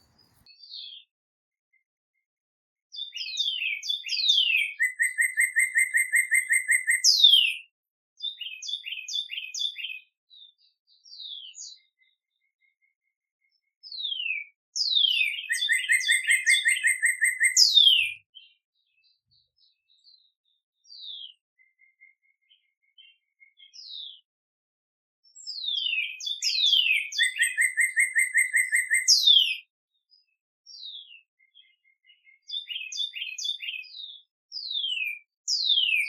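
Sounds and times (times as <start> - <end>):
short bird chirps: 0.0 - 1.0, 3.1 - 7.6, 14.8 - 18.2, 25.4 - 29.6, 34.6 - 36.0
songbird singing trills: 3.0 - 10.1, 13.9 - 18.6, 25.3 - 29.7, 30.7 - 36.0.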